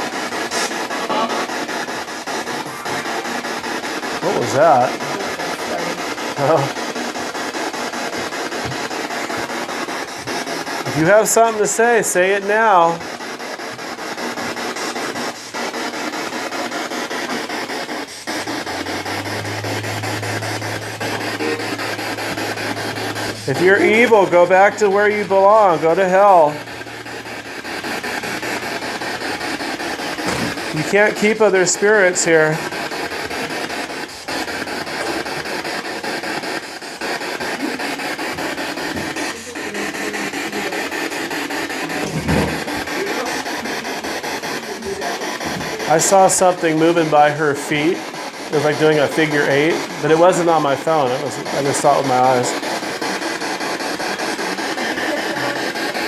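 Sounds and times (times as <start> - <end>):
chopped radio static: 0.0 - 56.0
snatches of broadcast sound: 0.0 - 56.0
low steady hum: 18.1 - 30.9.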